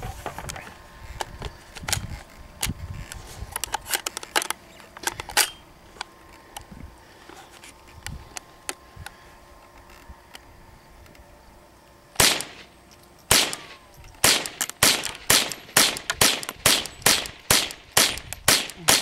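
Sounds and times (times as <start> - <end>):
rifle clicks and rattles: 0.3 - 6.7, 12.2 - 19.0.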